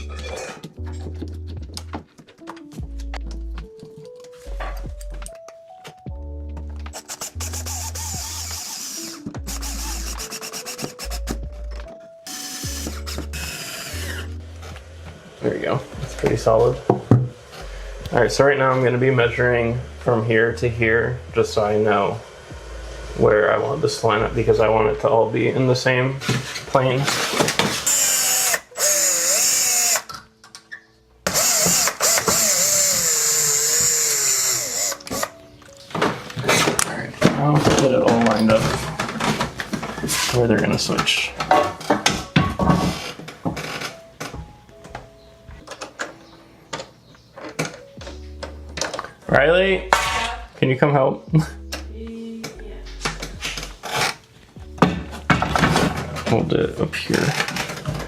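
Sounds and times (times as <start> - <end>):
power drill driving screws: 6.9 - 11.4, 12.3 - 14.3, 27.1 - 30.1, 31.3 - 35.3
music with deep bass: 9.3 - 10.3, 11.0 - 11.9, 12.6 - 25.0, 51.3 - 53.8.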